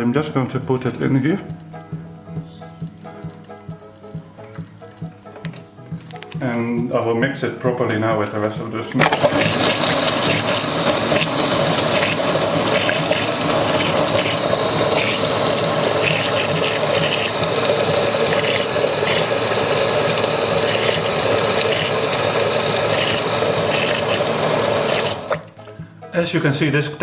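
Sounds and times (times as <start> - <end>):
electric blender running: 9.0 - 25.4.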